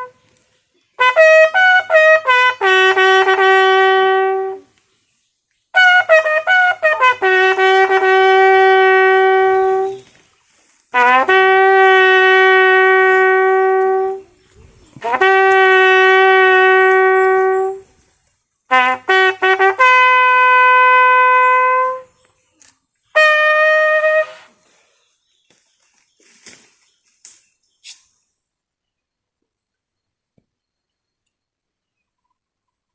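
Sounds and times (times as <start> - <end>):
solo bugle call: 0.0 - 0.2, 1.0 - 4.7, 5.8 - 10.0, 10.9 - 14.3, 15.0 - 17.9, 18.7 - 22.1, 23.2 - 24.6.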